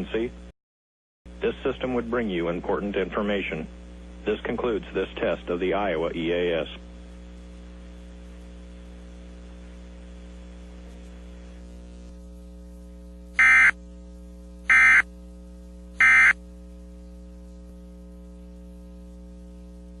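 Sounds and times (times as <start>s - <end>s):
steady low hum: 1.3s - 20.0s
digital data tone bursts: 13.4s - 13.8s, 14.7s - 15.0s, 16.0s - 16.4s.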